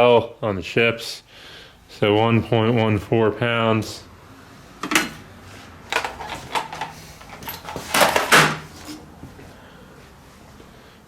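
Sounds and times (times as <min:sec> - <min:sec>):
circuit boards clacking and rustling: 0:05.8 - 0:09.1.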